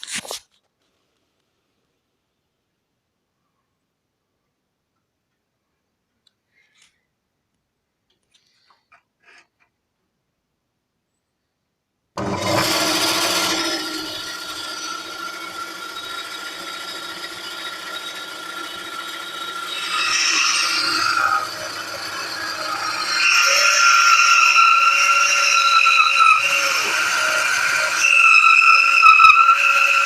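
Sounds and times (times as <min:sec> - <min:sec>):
bandsaw blade cutting wood: 0:12.2 - 0:30.0
bandsaw running: 0:12.2 - 0:30.0.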